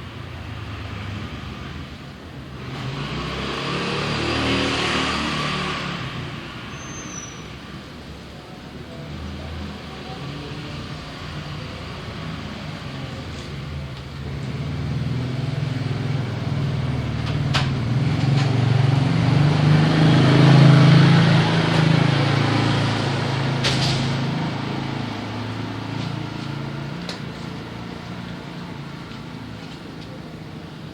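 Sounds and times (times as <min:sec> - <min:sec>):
motor vehicle passing: 0:14.4 - 0:30.9.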